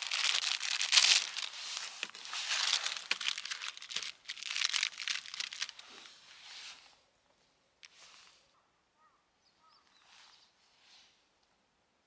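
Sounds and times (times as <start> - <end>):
crinkly material rustling: 0.0 - 6.4.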